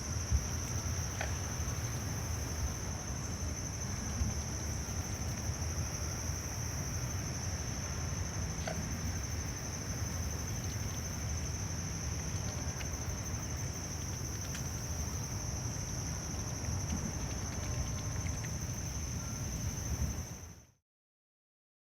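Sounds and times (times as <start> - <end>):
insects trilling: 0.0 - 20.7
faint ticks: 12.2 - 15.4, 16.4 - 20.2.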